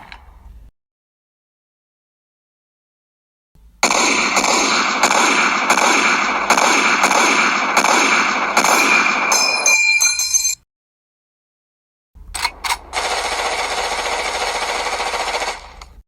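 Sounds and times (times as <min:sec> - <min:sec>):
metallic ringing: 0:09.3 - 0:10.6.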